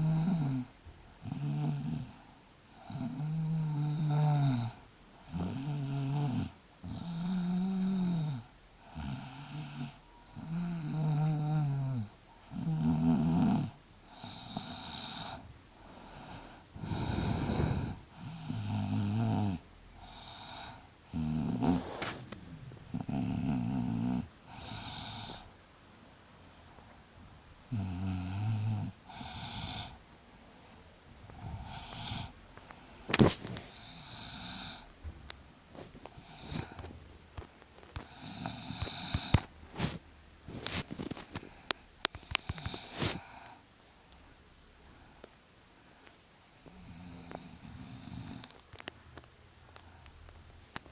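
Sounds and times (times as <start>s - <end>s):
woman snoring: 0.0s - 22.2s, 22.9s - 25.5s, 27.7s - 30.0s, 31.3s - 32.4s, 33.2s - 34.9s, 36.1s - 36.9s, 38.0s - 39.5s, 42.1s - 43.6s, 46.6s - 48.6s.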